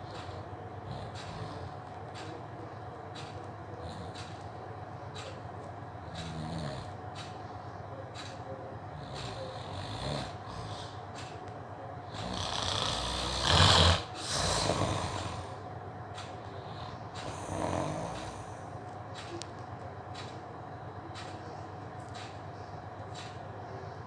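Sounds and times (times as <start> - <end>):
man snoring: 6.1 - 7.0, 9.0 - 11.0, 12.1 - 15.6, 16.6 - 18.6.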